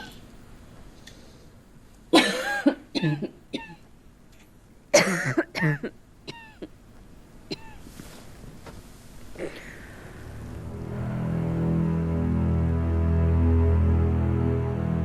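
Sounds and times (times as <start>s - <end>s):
person coughing: 2.2s - 3.8s, 4.9s - 6.7s, 7.5s - 7.8s, 9.4s - 9.9s.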